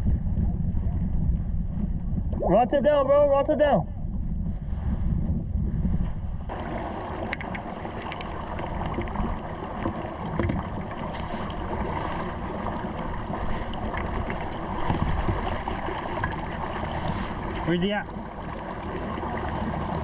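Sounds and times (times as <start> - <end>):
water lapping against kayak hull: 4.0 - 20.0
light clicks and knocks: 7.3 - 11.3.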